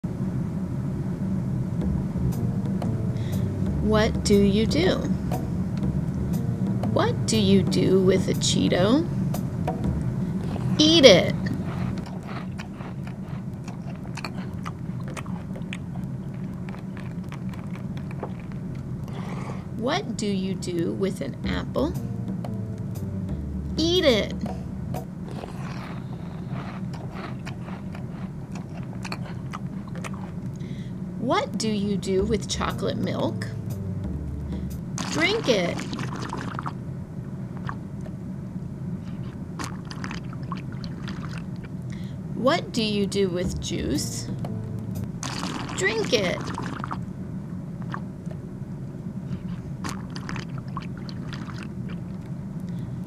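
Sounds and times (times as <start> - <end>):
steady low hum: 0.0 - 53.0
swallowing and mouth sounds: 10.2 - 19.8, 25.2 - 30.8, 34.5 - 36.8, 37.5 - 38.2, 39.0 - 42.0, 45.2 - 47.1, 47.8 - 48.4, 49.3 - 52.8
crunchy snack chewing: 10.4 - 19.7, 25.2 - 30.7, 35.0 - 36.8, 39.1 - 41.8, 45.2 - 47.0, 49.4 - 52.8.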